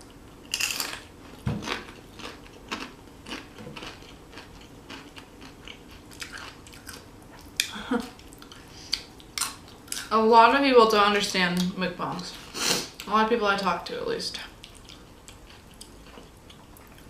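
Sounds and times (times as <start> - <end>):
crunching tortilla chips: 0.5 - 7.1.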